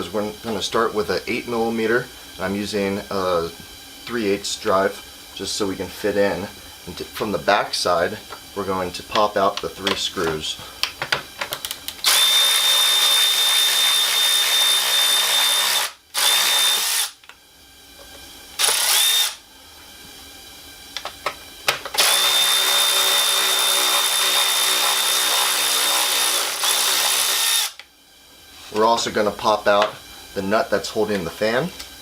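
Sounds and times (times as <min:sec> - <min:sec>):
cordless power tool whining: 0:06.1 - 0:17.4, 0:18.0 - 0:19.4, 0:21.0 - 0:27.9.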